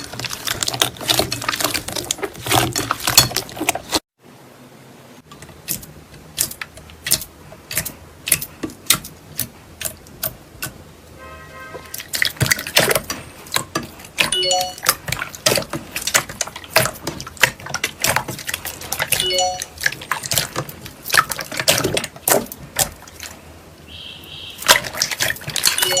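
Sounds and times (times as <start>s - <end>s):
slime squishing with wet clicks: 5.3s - 10.8s, 11.8s - 23.9s, 24.6s - 26.0s.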